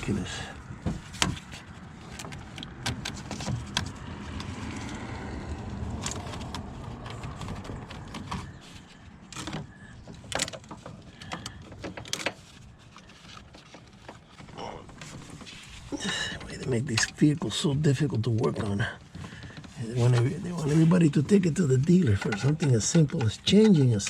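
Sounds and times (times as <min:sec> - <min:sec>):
rustling handling noise: 0:05.9 - 0:24.0.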